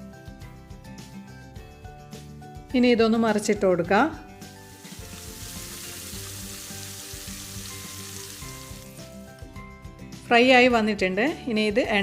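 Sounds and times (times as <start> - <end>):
crab sizzling in frying pan: 4.5 - 9.1.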